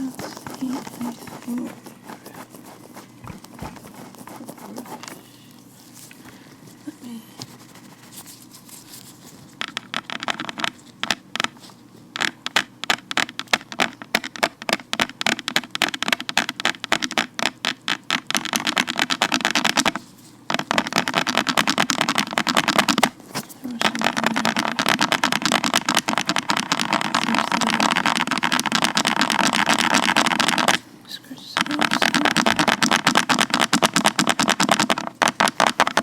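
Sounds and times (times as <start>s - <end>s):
gloved fingers scratching: 0.0s - 36.0s.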